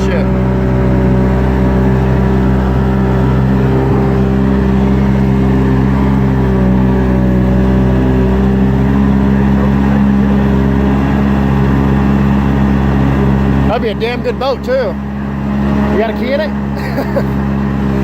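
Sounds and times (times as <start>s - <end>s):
vehicle engine running steadily: 0.0s - 18.0s.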